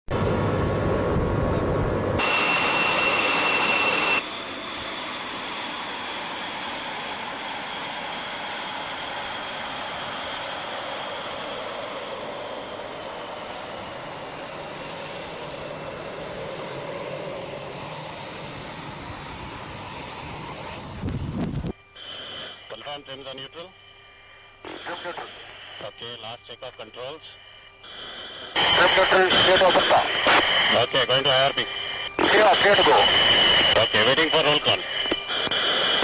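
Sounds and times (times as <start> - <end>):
jet engine running: 0.1 - 36.0
burst of noise with high tone: 24.6 - 36.0.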